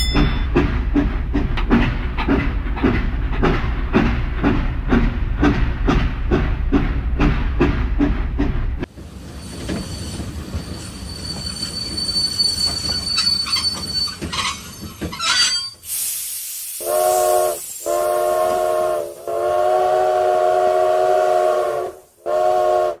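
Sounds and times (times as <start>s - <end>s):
train wheel squeal: 9.2s - 16.0s
steam hiss: 15.8s - 23.0s
train whistle blasts: 16.8s - 23.0s.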